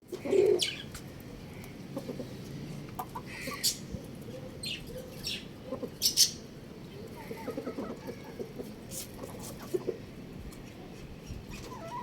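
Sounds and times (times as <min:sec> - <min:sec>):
chickens clucking and chirping: 0:00.0 - 0:12.0.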